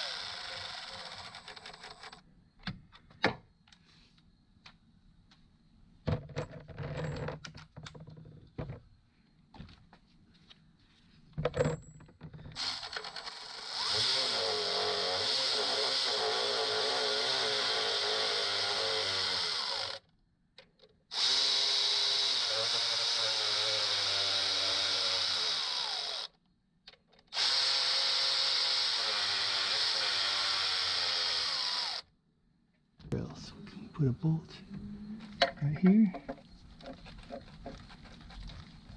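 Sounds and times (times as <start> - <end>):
cordless drill driving bolts: 0.0 - 2.2, 12.5 - 20.0, 21.1 - 26.4, 27.3 - 32.1.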